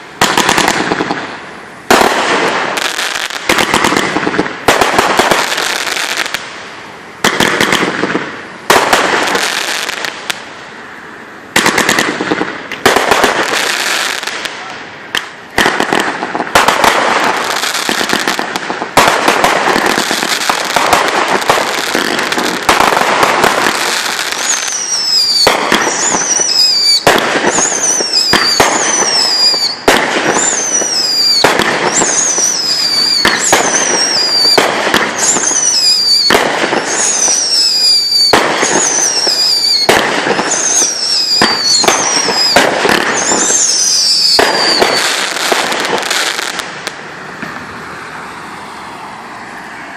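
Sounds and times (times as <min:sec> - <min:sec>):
fireworks bangs and crackling: 0:00.0 - 0:49.9
whistling firework shots: 0:00.0 - 0:49.9.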